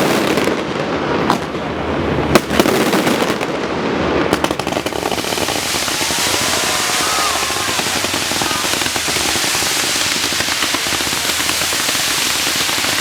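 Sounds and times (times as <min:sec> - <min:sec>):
fireworks crackling: 0:00.0 - 0:13.0
firework shells bursting: 0:04.4 - 0:13.0.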